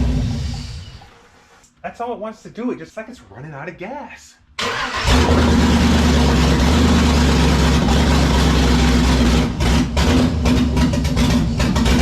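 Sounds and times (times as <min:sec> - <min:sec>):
engine running and sputtering: 0:05.0 - 0:12.0.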